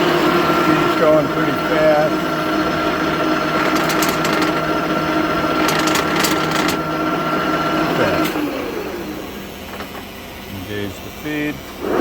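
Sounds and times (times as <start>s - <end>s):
lathe gear whine: 0.0s - 12.0s
lathe clicking: 2.6s - 7.2s.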